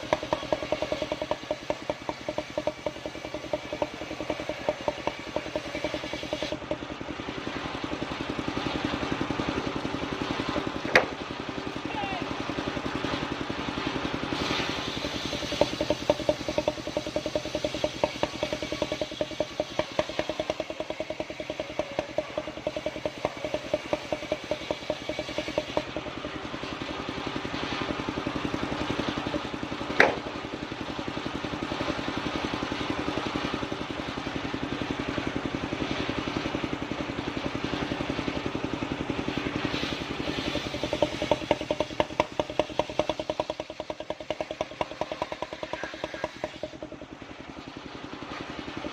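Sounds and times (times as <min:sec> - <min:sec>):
sawmill engine running: 0:00.0 - 0:48.9
sharp knock: 0:10.9 - 0:11.2, 0:30.0 - 0:30.3.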